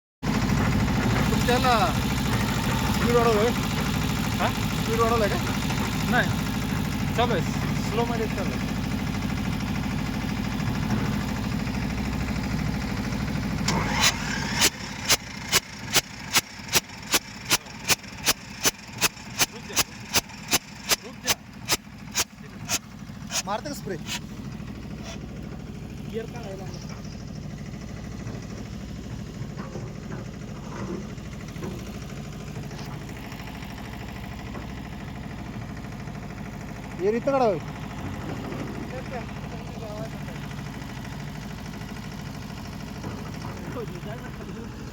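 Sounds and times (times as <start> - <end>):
diesel engine rumbling: 0.2 - 44.9
sharp regular clicks: 14.0 - 23.5
short hiss: 18.9 - 24.2.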